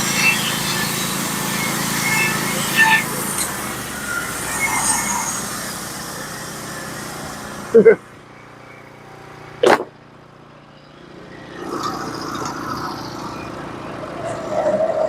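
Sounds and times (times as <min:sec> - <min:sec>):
bandsaw mill engine running: 0:00.0 - 0:09.6
short sharp loud bang: 0:09.6 - 0:09.9.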